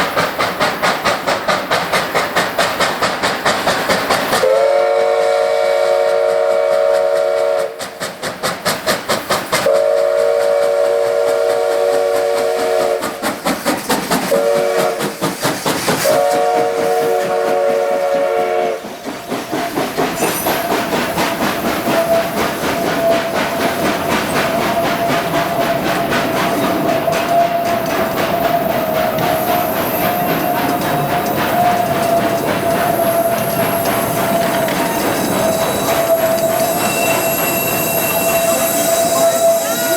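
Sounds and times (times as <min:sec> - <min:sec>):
train wheels clattering: 0:00.0 - 0:39.9
locomotive whistle chord: 0:04.4 - 0:07.7, 0:29.4 - 0:39.9
thin steady squeal: 0:24.3 - 0:39.9.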